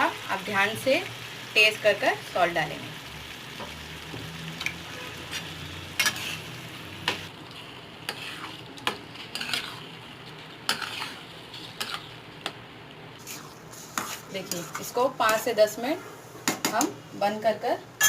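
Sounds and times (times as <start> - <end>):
vegetables sizzling in a pan: 0.0 - 16.0
spoon scraping and knocking pan: 10.7 - 12.6, 13.2 - 15.4.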